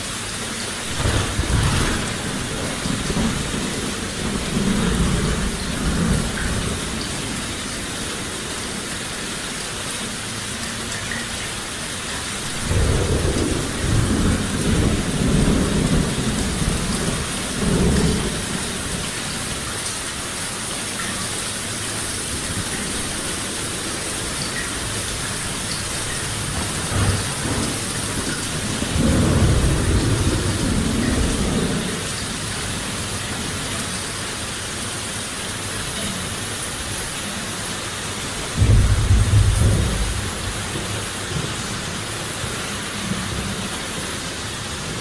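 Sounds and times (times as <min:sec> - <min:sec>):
heavy rain hissing: 0:00.0 - 0:45.0
rolling thunder: 0:00.8 - 0:07.7, 0:12.4 - 0:19.7, 0:22.2 - 0:32.5, 0:38.5 - 0:42.4.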